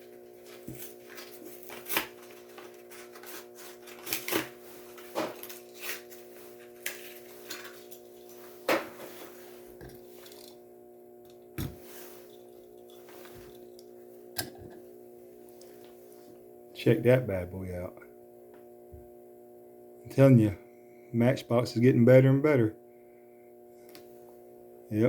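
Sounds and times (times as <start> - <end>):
steady low hum: 0.0 - 25.0
plastic packaging torn open: 1.1 - 4.5.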